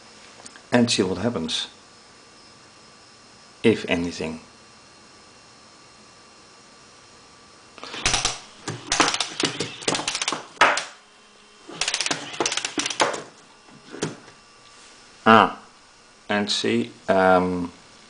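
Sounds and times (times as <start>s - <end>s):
plastic robot legs clattering: 7.8s - 10.9s, 11.7s - 14.3s.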